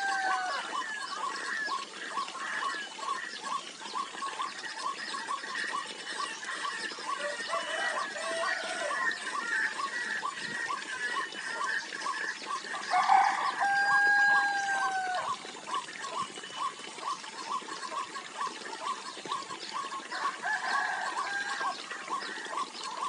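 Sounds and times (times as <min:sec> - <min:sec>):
rooster crowing: 0:00.0 - 0:00.8, 0:07.2 - 0:09.0, 0:12.9 - 0:15.3, 0:20.2 - 0:21.8.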